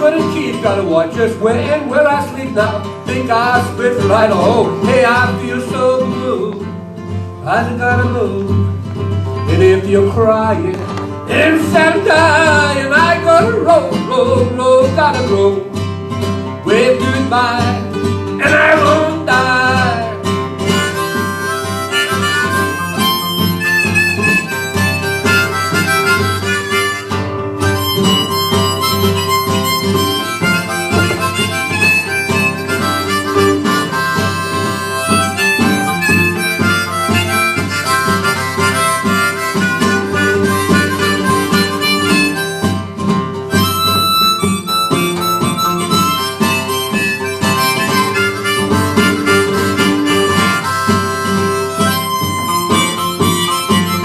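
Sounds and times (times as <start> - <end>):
strummed acoustic guitar: 0.0 - 54.0
harmonica solo: 17.7 - 54.0.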